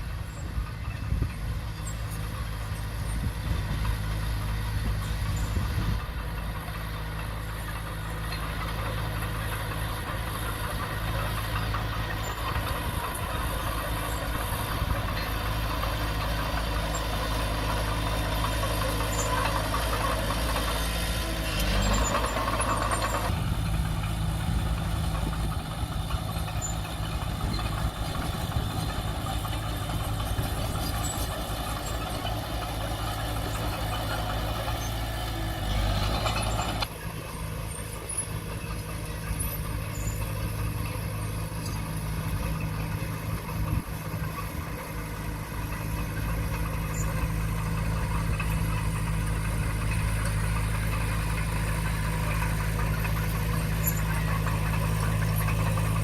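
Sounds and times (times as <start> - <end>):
bulldozer diesel engine running: 0.0 - 56.0.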